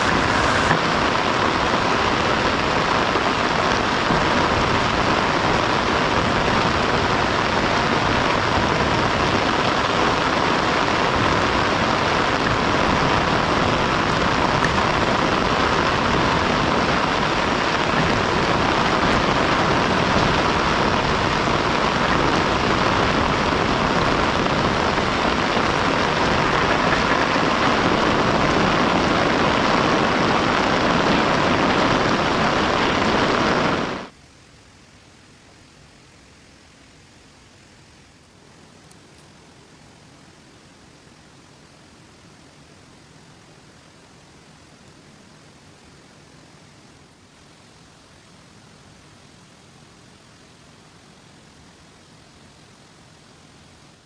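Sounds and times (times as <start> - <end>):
heavy rain falling: 0.0 - 34.7
faint hiss: 0.0 - 54.0.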